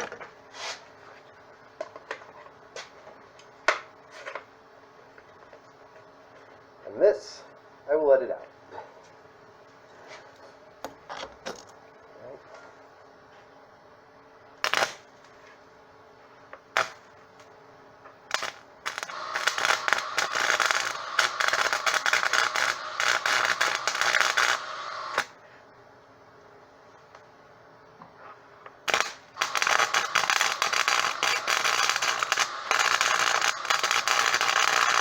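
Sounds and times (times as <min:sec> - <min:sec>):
faint steady hum: 0:00.0 - 0:35.0
arc welder crackling: 0:14.6 - 0:15.4, 0:16.5 - 0:25.4, 0:28.6 - 0:35.0.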